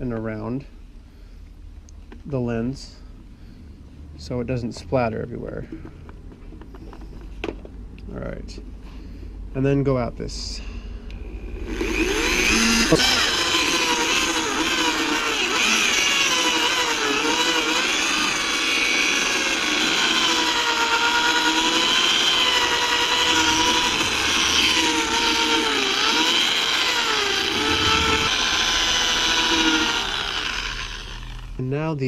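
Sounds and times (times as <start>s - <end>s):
power drill motor whine: 11.2s - 31.6s.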